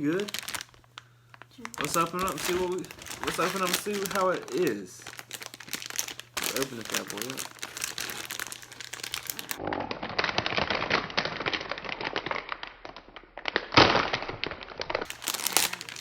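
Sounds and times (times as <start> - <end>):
plastic packaging crinkling: 0.0 - 16.0.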